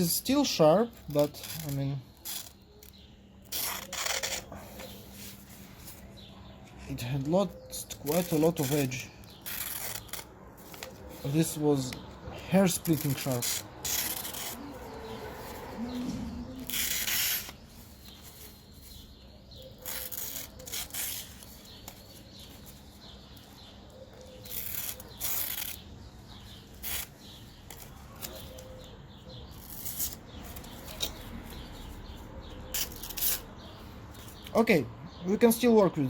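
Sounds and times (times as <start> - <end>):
knife blade scraping: 1.1 - 5.5, 12.7 - 15.2, 16.6 - 17.6, 19.6 - 22.0, 32.7 - 33.5.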